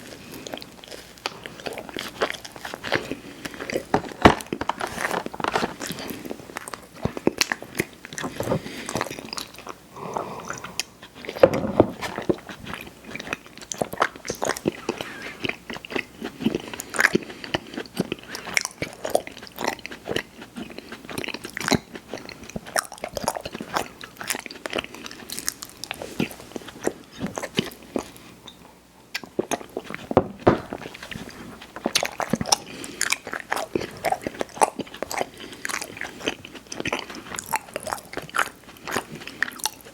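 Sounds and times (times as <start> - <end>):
person biting and chewing: 29.1 - 39.9.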